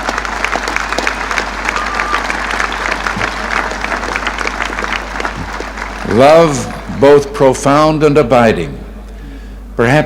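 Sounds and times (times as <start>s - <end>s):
crowd applauding: 0.0s - 7.7s.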